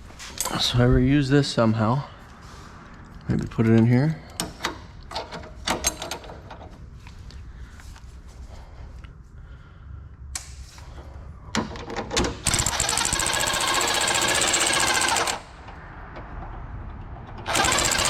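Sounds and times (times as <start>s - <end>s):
impact wrench bursts: 12.4s - 15.7s, 17.4s - 18.0s.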